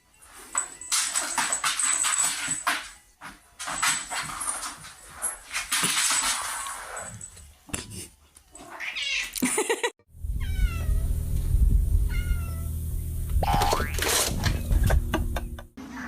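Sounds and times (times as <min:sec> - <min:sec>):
knocks and rustling: 0:00.4 - 0:08.0
cat meowing: 0:08.8 - 0:09.4, 0:10.4 - 0:11.1, 0:12.1 - 0:12.7
steady low hum: 0:10.1 - 0:15.7.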